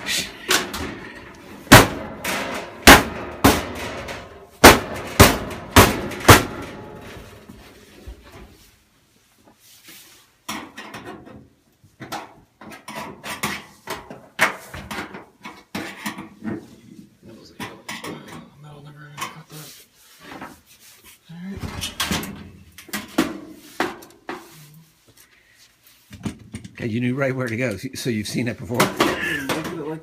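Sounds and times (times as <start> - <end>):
loud blows on sheet metal: 1.6 - 7.3.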